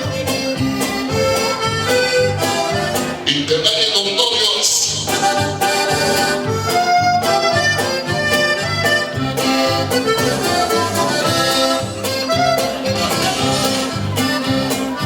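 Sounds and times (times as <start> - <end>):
accordion-led latin dance music: 0.0 - 15.0
steady bass beat: 3.2 - 6.0.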